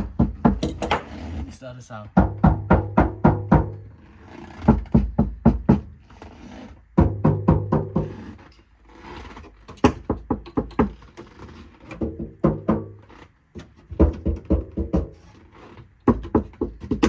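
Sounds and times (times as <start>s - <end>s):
knuckles knocking on metal panel: 0.0s - 0.9s, 2.2s - 3.8s, 4.7s - 5.9s, 7.0s - 8.2s, 12.0s - 13.0s, 13.9s - 15.2s.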